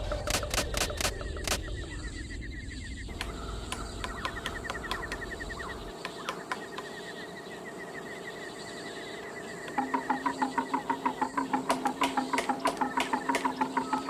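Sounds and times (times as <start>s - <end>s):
birds chirping: 0.0s - 14.0s
sharp clicks: 0.1s - 1.8s, 3.1s - 7.1s, 9.6s - 13.9s
steady background hiss: 0.8s - 14.0s.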